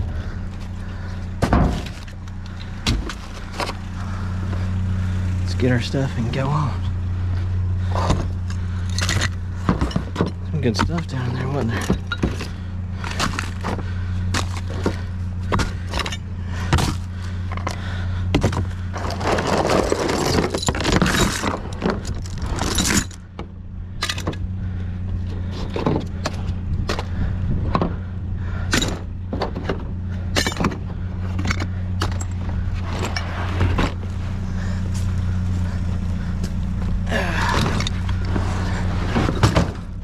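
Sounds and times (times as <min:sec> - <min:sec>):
steady low hum: 0:00.0 - 0:40.0
scrap knocking and clattering: 0:08.0 - 0:24.4, 0:37.5 - 0:40.0.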